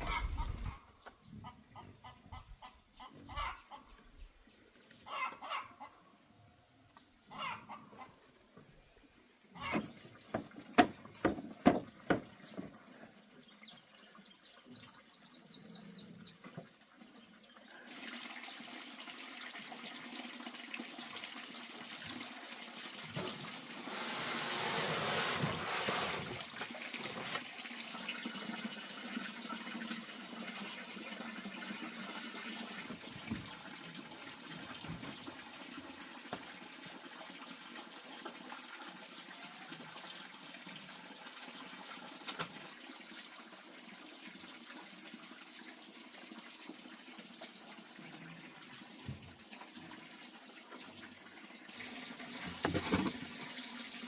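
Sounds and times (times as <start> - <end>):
running water: 0.0 - 1.3, 9.4 - 54.0
sharp knocks: 9.7 - 12.3.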